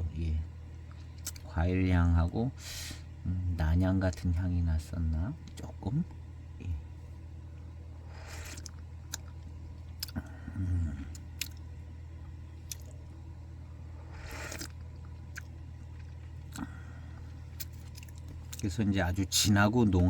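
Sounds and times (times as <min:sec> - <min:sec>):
low murmur: 0:00.0 - 0:20.0
low steady hum: 0:00.0 - 0:20.0
breathy intake of air: 0:02.6 - 0:03.1.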